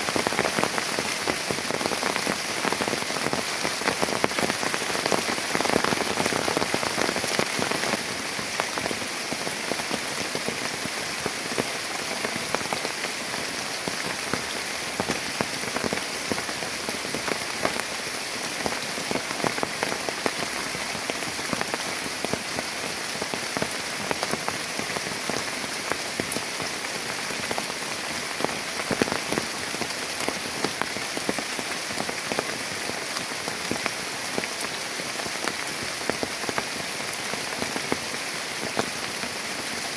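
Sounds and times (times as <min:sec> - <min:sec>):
heavy rain: 0:00.0 - 0:39.9
raindrops hitting near surface: 0:00.0 - 0:39.9.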